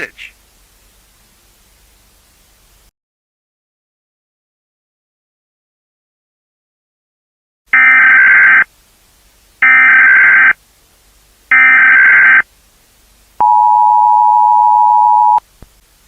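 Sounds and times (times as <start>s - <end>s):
screeching digital data tones: 7.8s - 8.6s, 9.6s - 10.5s, 11.6s - 12.4s
two-tone attention signal: 7.8s - 8.6s, 11.5s - 12.4s, 13.4s - 15.4s.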